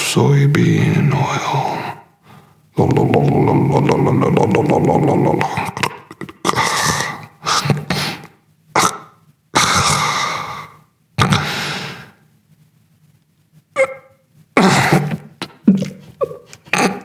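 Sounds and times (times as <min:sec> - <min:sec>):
breathy hissing mouth sounds: 0:02.8 - 0:12.2.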